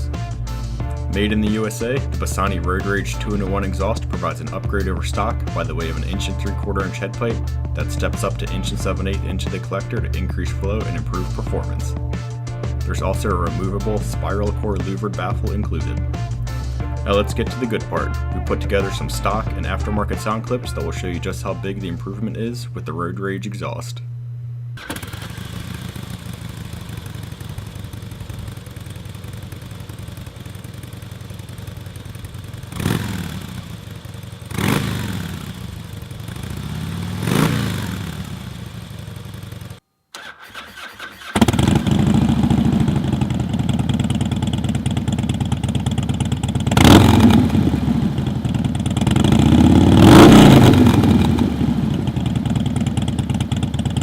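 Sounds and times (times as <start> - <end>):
motorcycle engine idling and revving: 0.0 - 18.2, 24.8 - 54.0.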